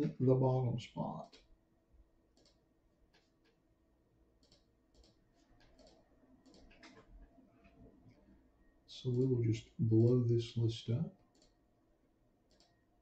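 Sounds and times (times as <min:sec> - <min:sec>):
computer clicks: 0:02.4 - 0:03.3, 0:04.4 - 0:07.1, 0:11.3 - 0:11.6, 0:12.5 - 0:12.8.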